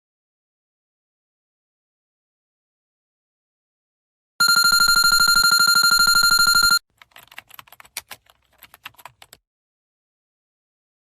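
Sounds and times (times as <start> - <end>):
electronic bell ringing: 4.4 - 6.8
keyboard keystrokes: 6.5 - 9.4.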